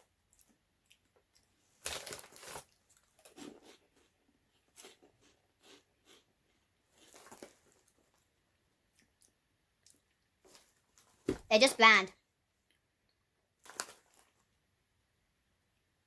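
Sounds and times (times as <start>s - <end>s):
crunchy snacks being chewed: 0.0s - 11.0s.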